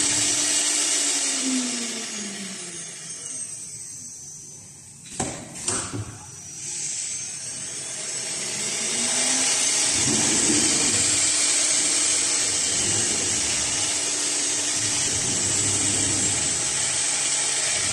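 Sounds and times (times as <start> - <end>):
woodworking machine whining: 0.0 - 17.9.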